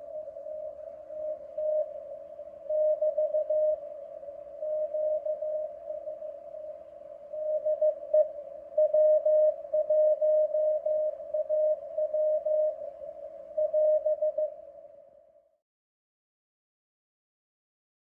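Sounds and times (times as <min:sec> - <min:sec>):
faint hiss: 0:00.0 - 0:15.1.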